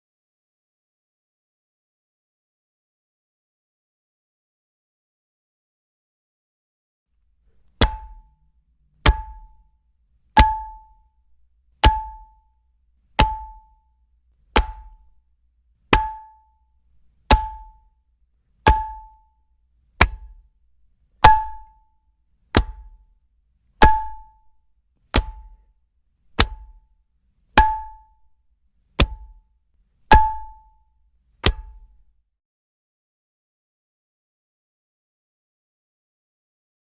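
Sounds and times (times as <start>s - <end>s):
frying pan hitting a body: 7.8s - 8.3s, 9.0s - 9.6s, 10.4s - 10.9s, 11.8s - 12.4s, 13.2s - 13.6s, 14.6s - 15.0s, 15.9s - 16.4s, 17.3s - 17.8s, 18.7s - 19.1s, 20.0s - 20.4s, 21.2s - 21.7s, 22.6s - 23.0s, 23.8s - 24.3s, 25.2s - 25.6s, 26.4s - 26.8s, 27.6s - 28.0s, 29.0s - 29.4s, 30.1s - 30.6s, 31.4s - 31.9s.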